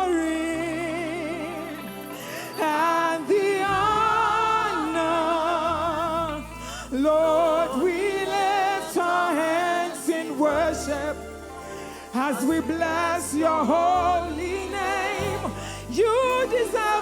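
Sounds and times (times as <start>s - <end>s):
person singing with vibrato: 0.0s - 17.0s
low bass notes: 3.7s - 8.8s, 12.5s - 17.0s.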